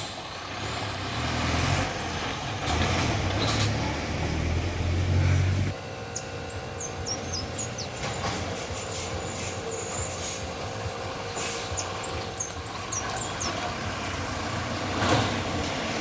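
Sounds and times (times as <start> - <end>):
vehicle engine humming: 0.0 - 16.0.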